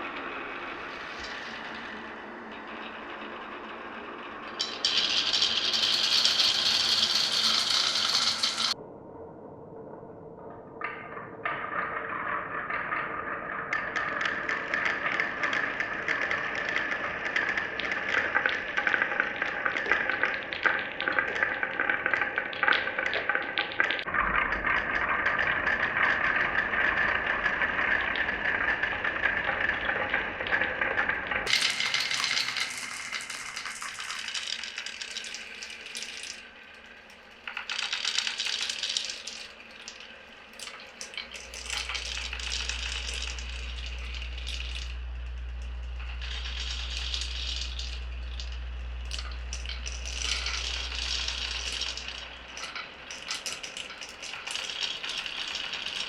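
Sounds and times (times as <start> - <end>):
marbles rolling and clattering: 0.0 - 8.8, 10.8 - 56.0
steady low hum: 40.5 - 53.7.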